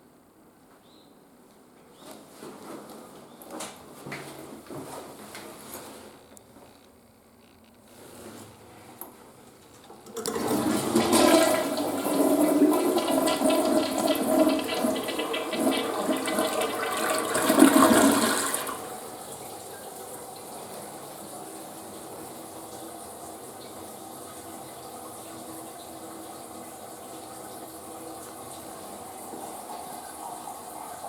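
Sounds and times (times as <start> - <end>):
toilet flushing: 10.0 - 31.0
toilet tank refilling hiss: 10.2 - 31.0.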